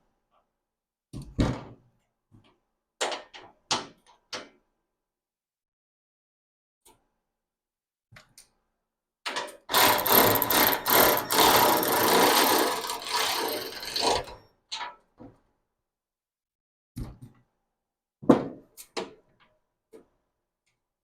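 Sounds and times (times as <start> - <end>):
loud mechanical rattle of tool: 9.7 - 14.4.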